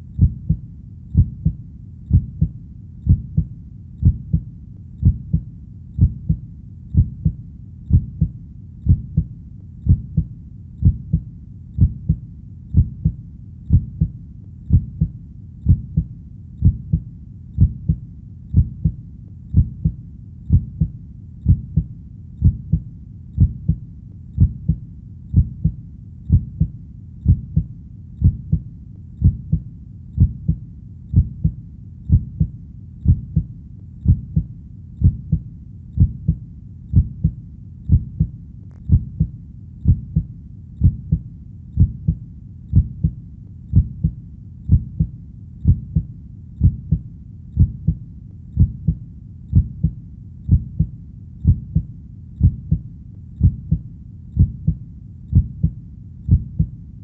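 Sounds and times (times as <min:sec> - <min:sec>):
heartbeat thumps: 0:00.0 - 0:23.8, 0:24.4 - 0:56.8
faint low hum: 0:00.0 - 0:57.0.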